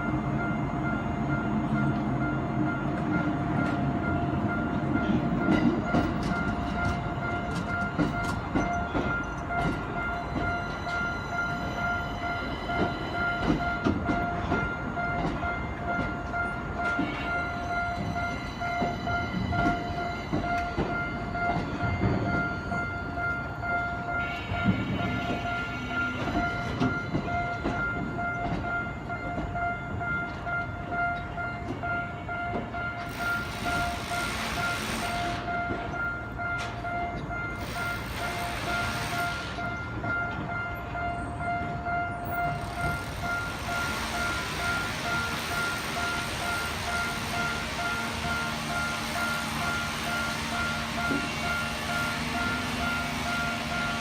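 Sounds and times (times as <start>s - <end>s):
level-crossing alarm clanging: 0.0s - 54.0s
train rumbling: 0.0s - 54.0s
wheels clicking over rail joints: 2.9s - 22.9s.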